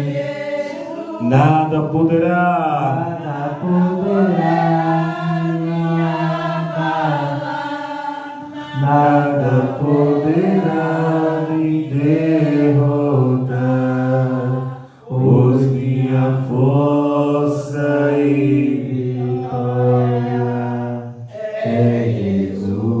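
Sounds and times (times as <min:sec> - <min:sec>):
voices singing a worship song: 0:00.0 - 0:23.0.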